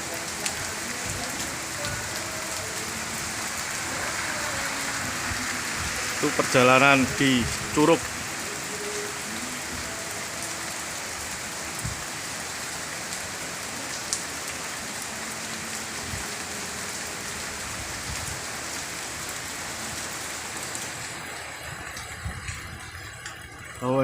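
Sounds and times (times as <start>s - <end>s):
heavy rain falling: 0.0s - 24.0s
raindrop ticks: 21.8s - 23.8s.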